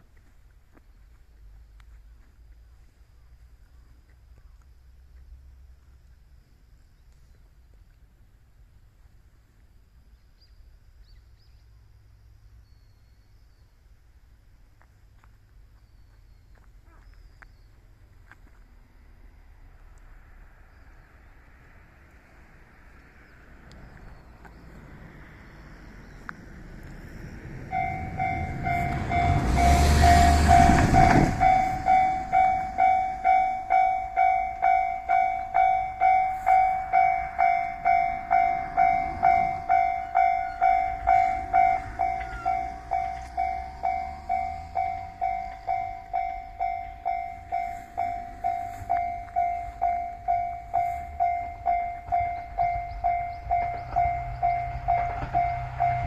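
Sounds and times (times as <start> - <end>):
level crossing bell dinging: 27.7 - 56.0.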